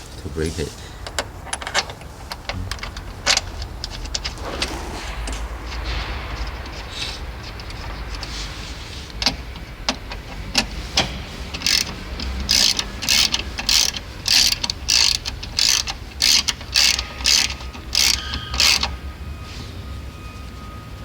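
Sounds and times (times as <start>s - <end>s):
ratchet tool clicking: 11.5s - 18.9s.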